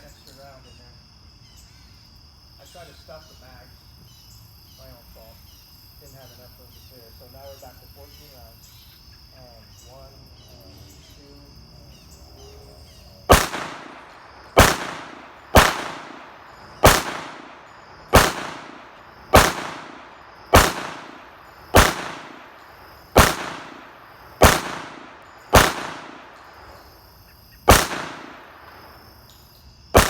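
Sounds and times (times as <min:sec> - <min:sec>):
pistol shots echoing: 0:13.3 - 0:26.8, 0:27.7 - 0:29.0.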